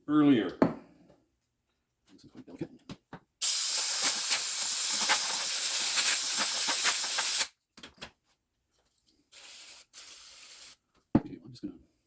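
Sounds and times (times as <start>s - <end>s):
spray jet hissing: 3.4s - 7.5s, 9.4s - 10.8s.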